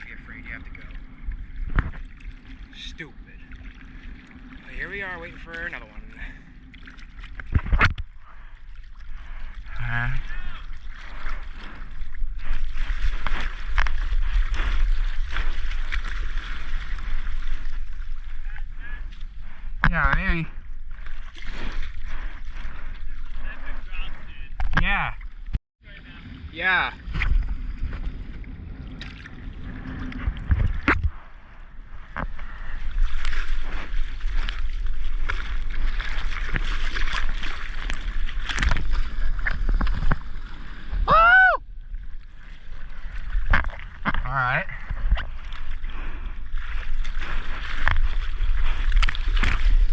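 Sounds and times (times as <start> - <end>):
small water splashes: 0.0 - 24.3, 26.5 - 31.2, 32.2 - 49.9
water lapping and slapping: 0.0 - 49.9
wind buffeting microphone: 26.1 - 42.2
person exclaiming: 41.1 - 41.6.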